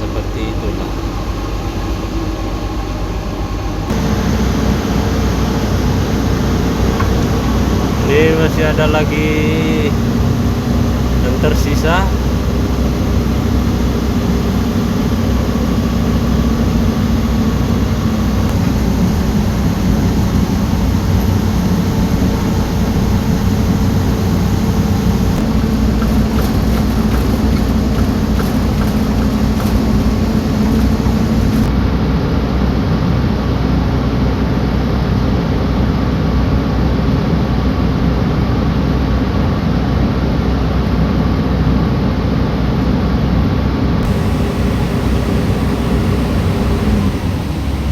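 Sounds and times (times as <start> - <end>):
bulldozer diesel engine droning: 0.0 - 31.7, 44.0 - 47.9.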